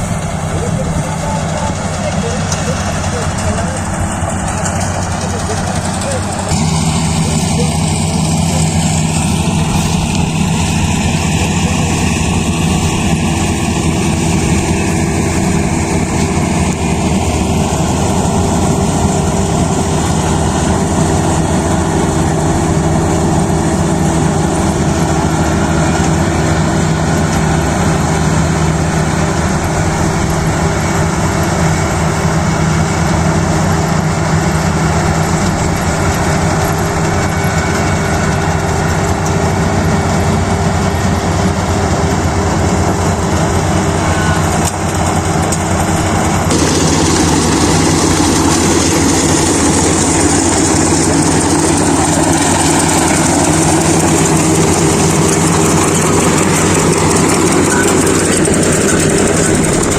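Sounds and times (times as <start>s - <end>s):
combine harvester engine running: 0.0s - 59.9s.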